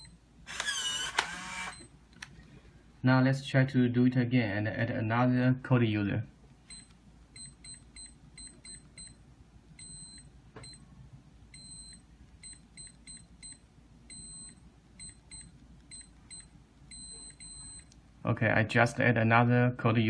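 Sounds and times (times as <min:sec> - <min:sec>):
keypad door lock beeping: 0:00.0 - 0:01.9, 0:06.7 - 0:09.2, 0:09.8 - 0:10.9, 0:11.5 - 0:18.0.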